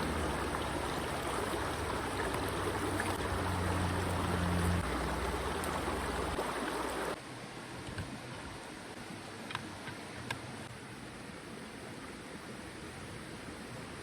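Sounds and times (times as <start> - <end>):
flowing water rushing: 0.0 - 9.4.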